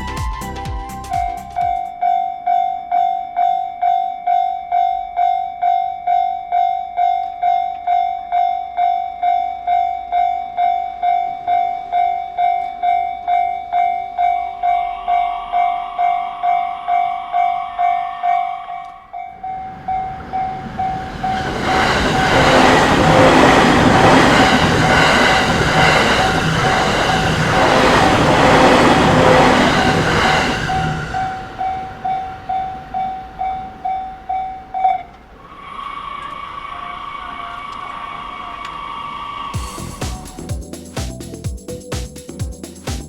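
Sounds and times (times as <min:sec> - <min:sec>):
level-crossing warning bell: 0:01.2 - 0:40.8
train passing: 0:04.3 - 0:42.9
steady tone: 0:09.5 - 0:43.0.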